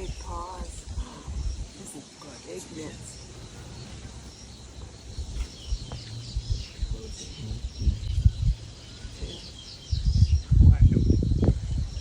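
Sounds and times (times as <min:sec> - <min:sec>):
birds chirping: 0:00.0 - 0:12.0
low thumps and rumble: 0:04.7 - 0:08.7, 0:09.9 - 0:12.0.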